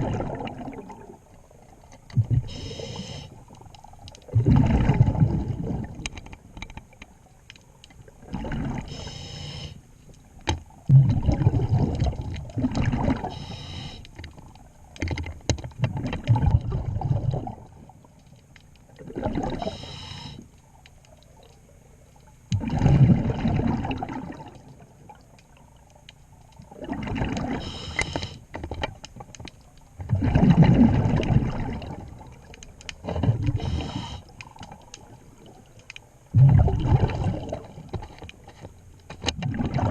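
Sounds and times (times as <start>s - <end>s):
exhaled bubbles gurgling: 0.0s - 6.6s, 8.0s - 9.6s, 10.7s - 15.1s, 15.7s - 18.1s, 18.9s - 20.4s, 22.5s - 25.7s, 26.6s - 28.4s, 29.9s - 38.2s, 39.3s - 39.9s
regulator inhale hiss: 2.4s - 3.5s, 8.9s - 9.9s, 13.2s - 14.2s, 19.6s - 20.5s, 27.6s - 28.5s, 33.5s - 34.4s.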